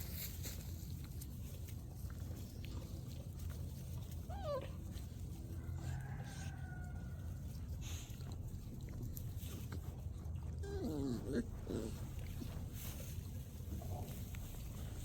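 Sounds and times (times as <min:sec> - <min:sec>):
puppy whining: 0:04.0 - 0:05.3, 0:10.4 - 0:12.7.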